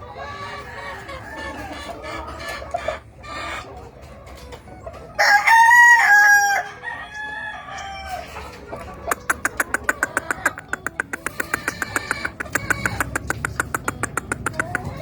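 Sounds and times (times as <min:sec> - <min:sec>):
chickens clucking: 0:00.0 - 0:15.0
rooster crowing: 0:05.2 - 0:08.3.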